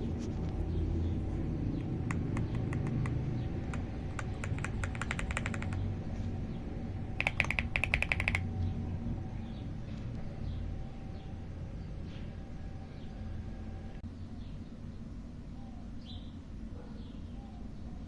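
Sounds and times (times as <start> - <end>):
steady low hum: 0.0 - 18.0
mechanical keyboard clicks: 2.0 - 5.9, 7.2 - 8.5.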